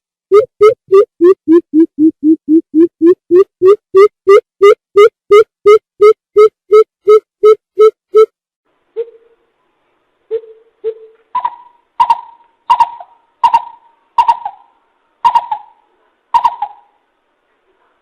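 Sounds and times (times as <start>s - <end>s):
bird hooting: 10.3s - 15.8s, 16.4s - 16.9s.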